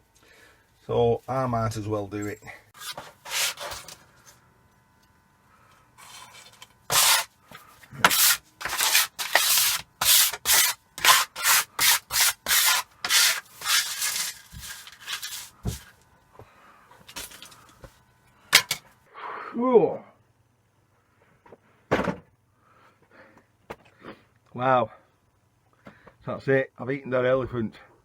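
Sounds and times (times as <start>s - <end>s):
hand tool scraping back and forth: 2.7s - 4.0s, 6.0s - 16.0s.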